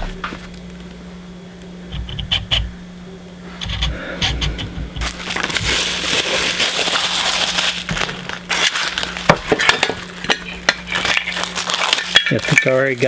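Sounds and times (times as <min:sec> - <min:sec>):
plastic packaging crinkling: 0:05.0 - 0:13.0.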